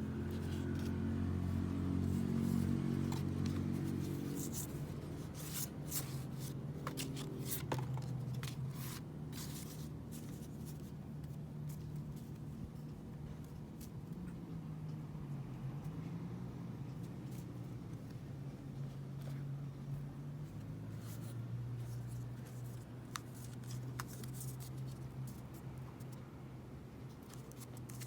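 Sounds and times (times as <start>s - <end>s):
card and plastic rustling: 0.2s - 10.9s, 21.0s - 25.6s, 27.1s - 28.0s.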